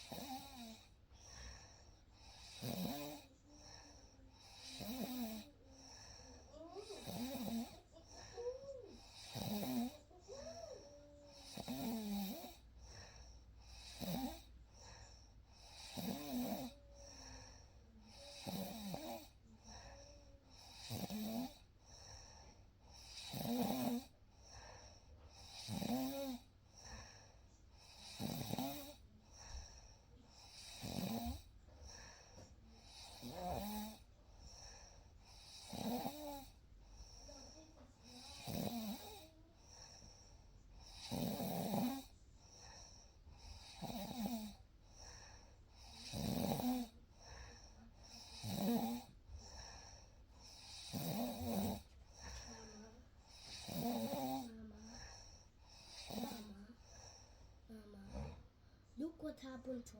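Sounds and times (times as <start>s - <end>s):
person snoring: 0.0s - 0.9s, 2.2s - 12.7s, 13.6s - 14.5s, 15.6s - 21.6s, 25.4s - 26.4s, 27.9s - 29.0s, 30.4s - 32.1s, 32.8s - 34.1s, 35.3s - 40.1s, 40.8s - 45.1s, 45.8s - 58.4s.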